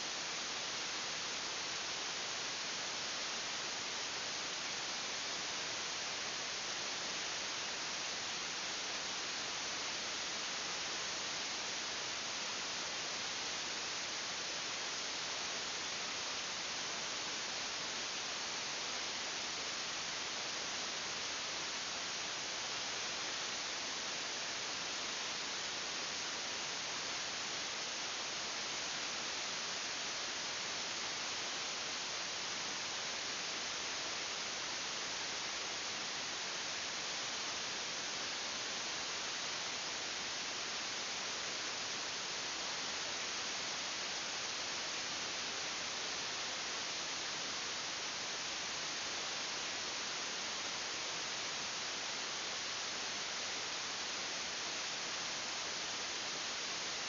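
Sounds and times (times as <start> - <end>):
steady hiss: 0.0 - 57.0.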